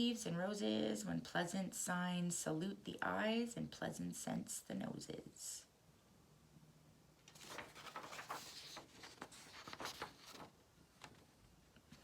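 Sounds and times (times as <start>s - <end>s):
paper pages rustling: 7.3s - 11.3s.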